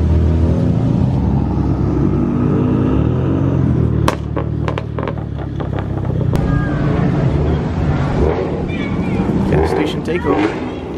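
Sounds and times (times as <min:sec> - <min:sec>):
car engine revving: 0:00.0 - 0:10.6
car engines running: 0:00.0 - 0:10.9
sharp cracks: 0:04.0 - 0:06.6.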